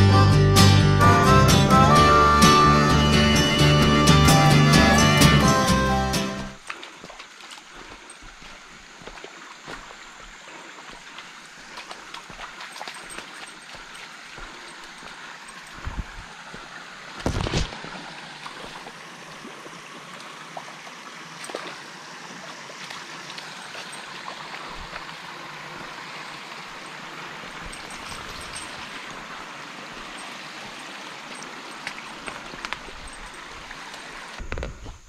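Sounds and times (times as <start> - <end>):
creek water flowing: 0.0 - 35.0.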